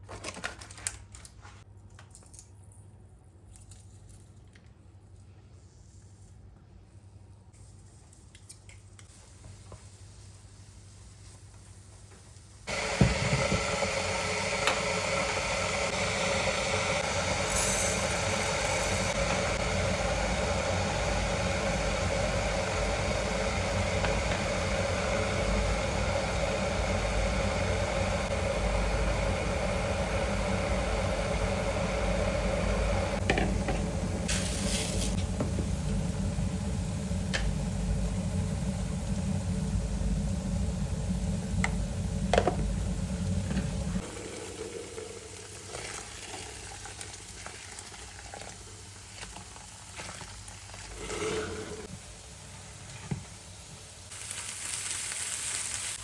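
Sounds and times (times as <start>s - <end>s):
appliance motor humming: 12.7s - 34.3s.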